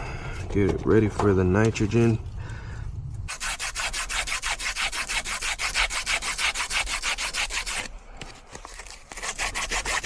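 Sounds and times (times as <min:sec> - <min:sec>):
hand tool rasping: 0:03.3 - 0:07.9, 0:08.7 - 0:10.0.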